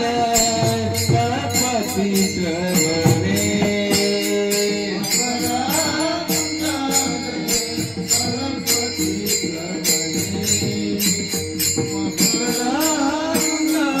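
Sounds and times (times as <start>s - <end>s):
small hand cymbals struck: 0.0s - 14.0s.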